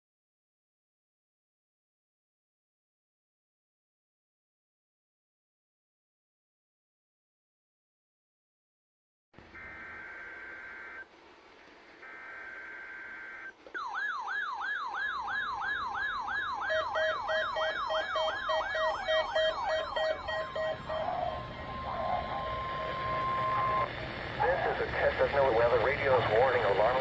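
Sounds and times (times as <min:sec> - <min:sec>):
steady warning alarm tone: 0:09.5 - 0:11.1, 0:12.0 - 0:27.0
alarm sweeping up and down: 0:09.6 - 0:11.1, 0:12.0 - 0:27.0
pulsing steady beeps: 0:09.6 - 0:11.1, 0:12.0 - 0:27.0
buzzy data bursts: 0:16.7 - 0:27.0.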